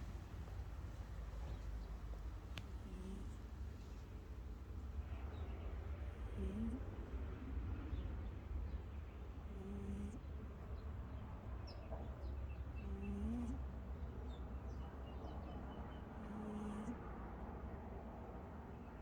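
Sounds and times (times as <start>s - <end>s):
cat snoring: 2.8s - 3.4s, 6.2s - 6.8s, 9.5s - 10.2s, 12.8s - 13.6s, 16.2s - 17.0s.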